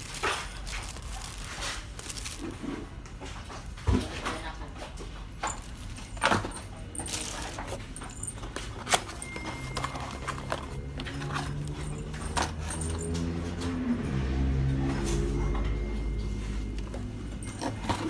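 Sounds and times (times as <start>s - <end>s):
equipment clicking and rattling: 0.0s - 2.8s, 5.4s - 13.2s
low steady hum: 0.0s - 12.3s, 15.3s - 18.0s.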